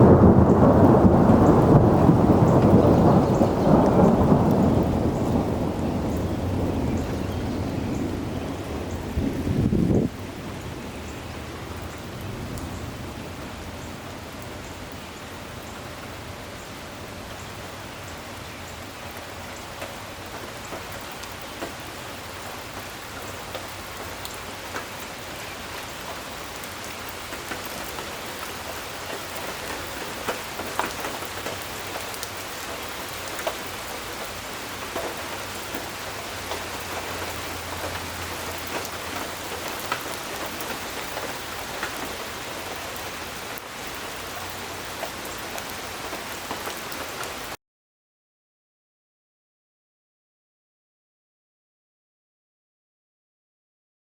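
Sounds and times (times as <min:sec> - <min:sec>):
thunder rumble: 0:00.0 - 0:14.3
heavy rain falling: 0:00.0 - 0:47.6
rain drop hits: 0:00.0 - 0:47.6.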